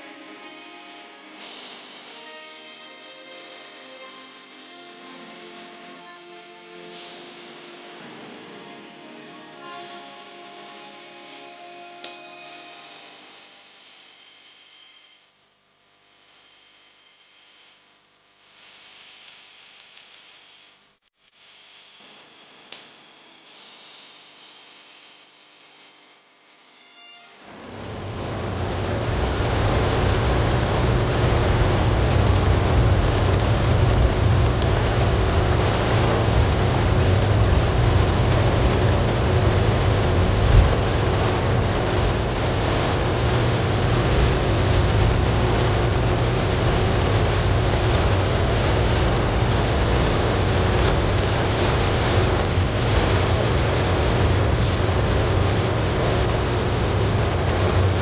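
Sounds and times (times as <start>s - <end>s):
heavy rain hiss: 1.1s - 6.0s, 6.8s - 10.2s, 27.4s - 58.0s
deep low rumble: 27.5s - 58.0s.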